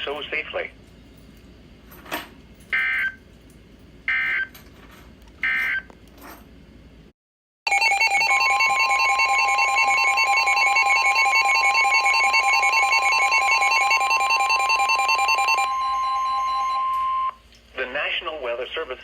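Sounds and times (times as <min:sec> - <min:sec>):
fast electronic alarm beeping: 0:07.7 - 0:17.3
steady warning tone: 0:07.7 - 0:17.4.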